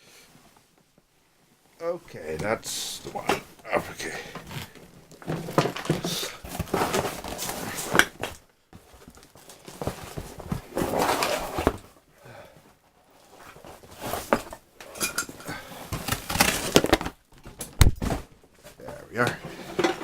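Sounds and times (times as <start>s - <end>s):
wrapping rustling: 1.8s - 17.2s.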